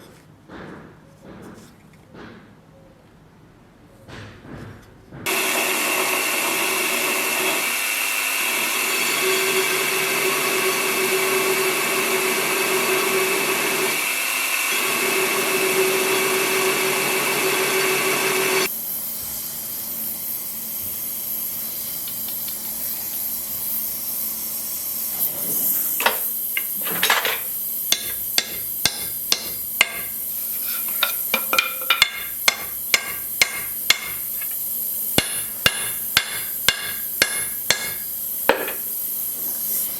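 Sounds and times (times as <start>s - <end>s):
power tool humming: 5.3s - 19.3s, 25.6s - 39.0s
sharp hammer taps: 28.0s - 30.1s.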